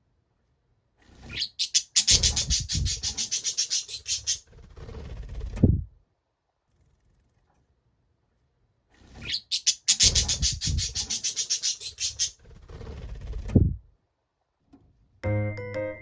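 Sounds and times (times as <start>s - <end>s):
budgerigars chirping: 1.3s - 4.4s, 9.2s - 12.4s
cheerful keyboard music: 15.2s - 16.0s.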